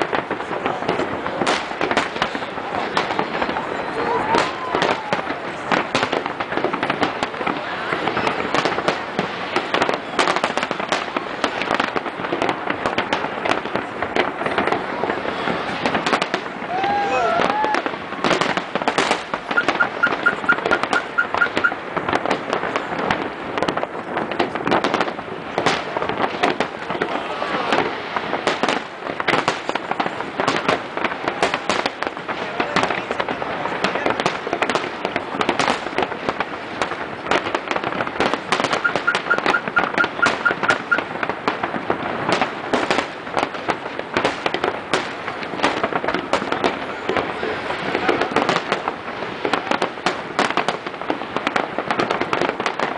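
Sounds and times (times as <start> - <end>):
fireworks bangs and crackling: 0.0 - 52.9.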